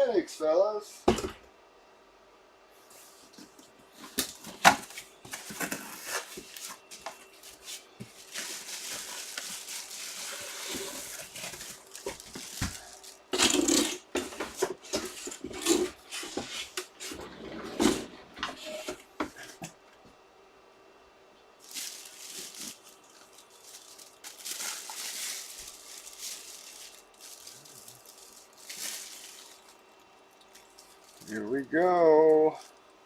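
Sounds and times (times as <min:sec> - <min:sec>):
packaging rustling and crinkling: 0:02.9 - 0:17.0, 0:21.6 - 0:31.6.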